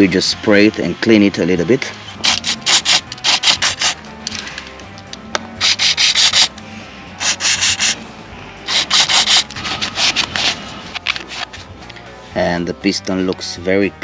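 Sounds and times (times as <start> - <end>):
cloth wiping brake piston: 2.0 - 4.0, 5.6 - 6.5, 7.1 - 8.1, 8.7 - 11.7.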